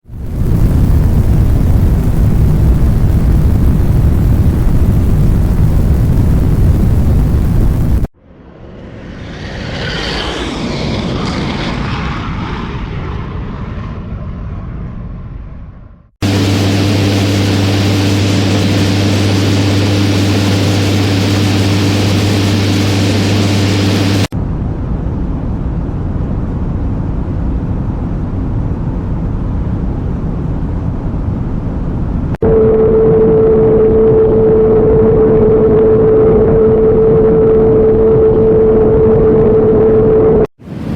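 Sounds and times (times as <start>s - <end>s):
airplane low rumble: 0.0s - 40.9s
engine drone with low hum: 0.1s - 40.5s
airplane roaring past: 8.2s - 24.3s.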